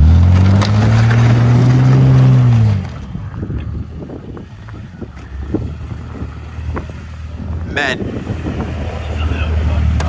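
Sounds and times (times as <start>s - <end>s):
wind noise on microphone: 3.0s - 9.5s.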